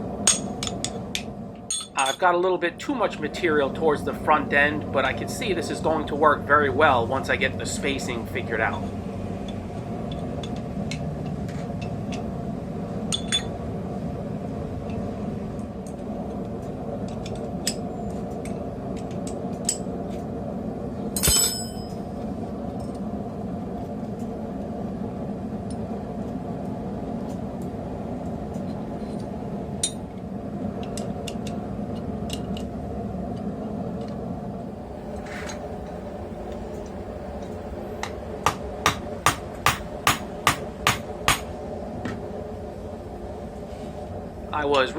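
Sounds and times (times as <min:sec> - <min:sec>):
steady low drone: 0:00.0 - 0:44.9
steel pieces clinking on anvil: 0:01.7 - 0:02.2, 0:21.2 - 0:22.0
ringing metal clank: 0:21.2 - 0:22.0.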